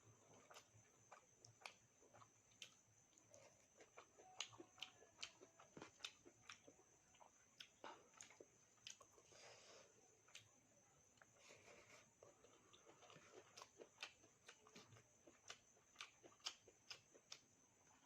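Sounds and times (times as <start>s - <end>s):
person chewing: 0.0s - 9.6s, 10.2s - 18.0s
faint high-pitched whine: 0.0s - 18.0s.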